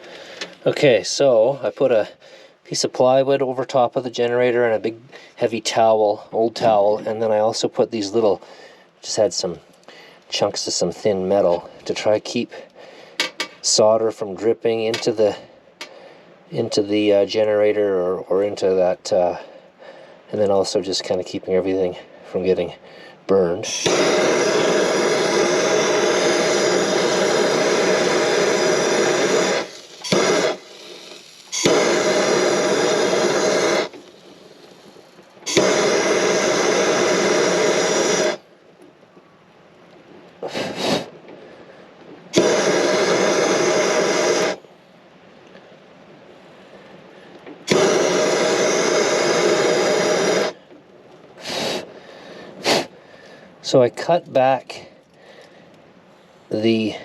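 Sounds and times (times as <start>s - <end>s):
electric hand tool whirring: 23.7s - 34.2s, 35.5s - 38.4s, 42.4s - 44.6s, 47.7s - 50.6s.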